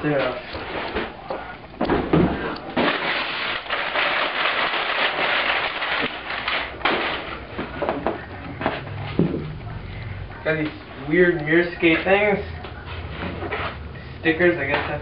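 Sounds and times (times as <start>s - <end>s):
packaging crinkling: 2.8s - 7.5s.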